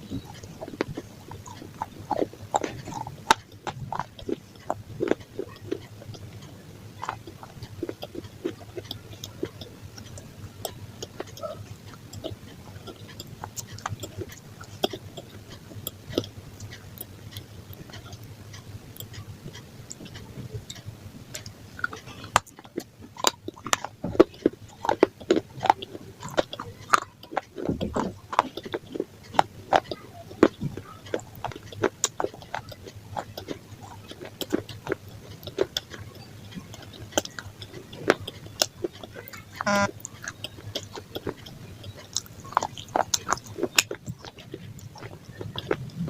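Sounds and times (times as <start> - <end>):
person chewing crunchy food: 0.0 - 46.0
wet mouth clicks: 0.1 - 46.0.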